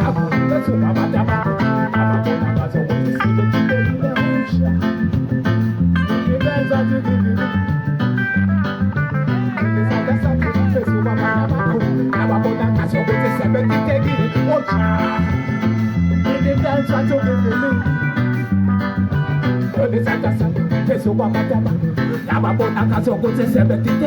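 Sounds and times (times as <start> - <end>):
guitar lines: 0.0 - 24.0
repeating bass line: 0.0 - 24.0.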